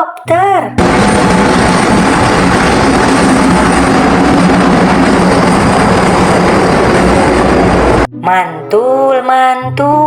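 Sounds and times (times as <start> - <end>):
helicopter rotor and engine: 0.8 - 8.1.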